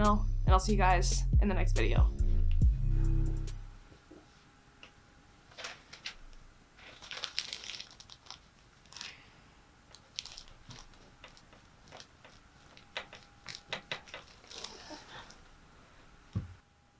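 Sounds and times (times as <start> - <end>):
crinkling and rustling: 4.1 - 16.6.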